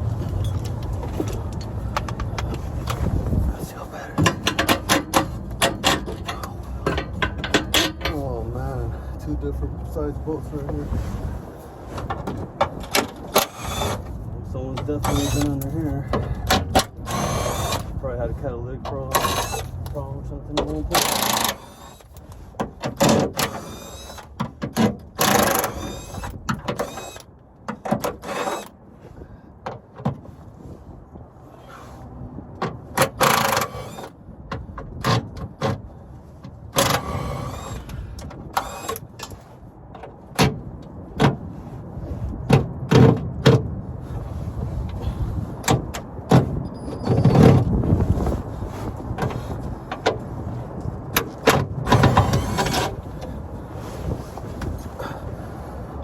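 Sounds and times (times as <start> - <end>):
wind rumbling on microphone: 0.0 - 56.0
metal tools clanking: 4.2 - 8.7, 14.7 - 18.0.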